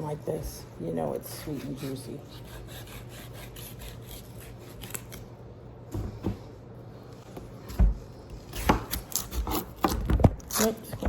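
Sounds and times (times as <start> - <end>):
knife cutting watermelon rind: 1.2 - 5.3, 8.4 - 11.0.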